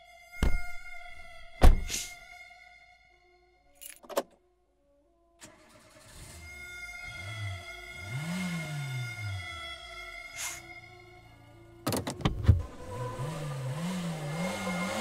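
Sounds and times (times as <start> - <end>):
truck engine starting: 5.4 - 10.9, 11.8 - 15.0.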